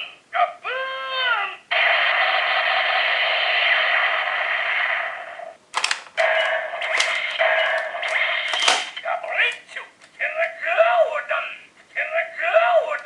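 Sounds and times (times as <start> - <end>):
toy gun clicks: 5.8 - 9.0.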